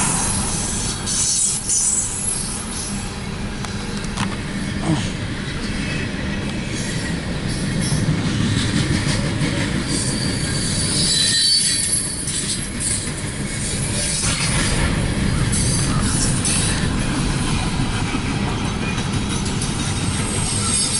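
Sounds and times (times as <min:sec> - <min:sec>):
freight cars rolling on rails: 0:00.0 - 0:20.9
wheel squeal: 0:00.2 - 0:03.1, 0:09.9 - 0:14.3, 0:20.3 - 0:20.9.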